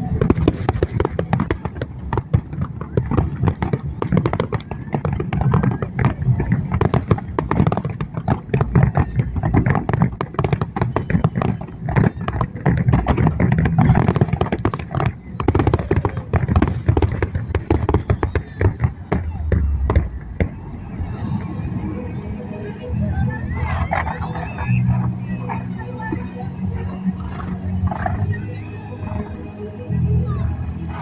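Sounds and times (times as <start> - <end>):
fireworks cracking and popping: 0.0 - 21.2
low booming: 0.0 - 31.0.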